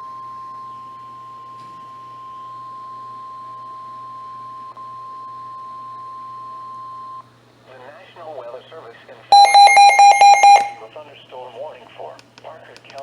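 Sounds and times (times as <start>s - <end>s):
high-pitched alert beep: 9.4s - 10.8s.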